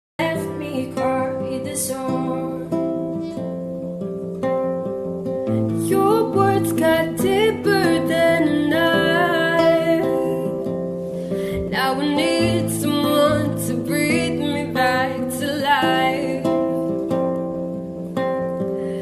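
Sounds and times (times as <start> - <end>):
woman singing ballad: 0.2 - 3.5, 5.6 - 17.2
acoustic guitar: 0.2 - 19.0.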